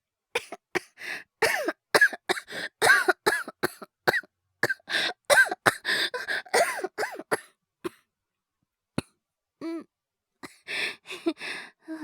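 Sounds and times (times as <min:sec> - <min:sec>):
boy coughing: 0:01.4 - 0:05.8, 0:06.4 - 0:07.4.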